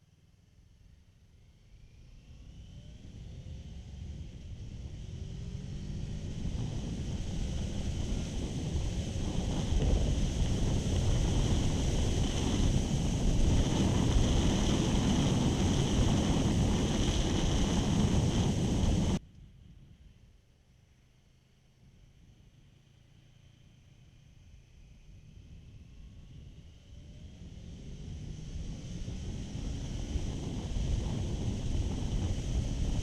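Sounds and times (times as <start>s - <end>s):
wind buffeting microphone: 6.1s - 19.2s, 27.5s - 33.0s.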